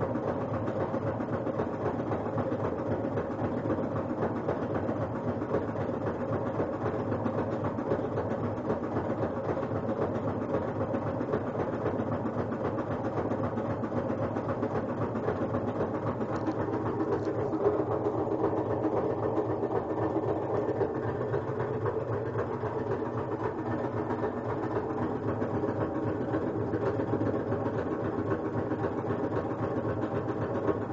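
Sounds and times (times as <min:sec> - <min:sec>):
washer drum hum: 0:00.0 - 0:30.9
washing machine knocking rattle: 0:00.0 - 0:30.9.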